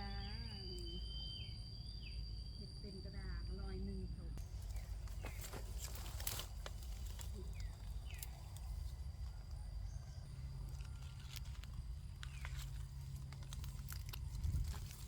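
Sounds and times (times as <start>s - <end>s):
footsteps in leaf litter: 4.4s - 15.0s.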